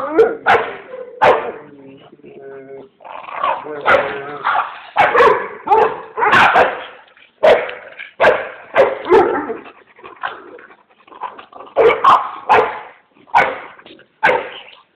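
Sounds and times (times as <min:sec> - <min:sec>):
dogs barking: 0:00.2 - 0:01.6, 0:03.8 - 0:09.6, 0:11.7 - 0:14.8.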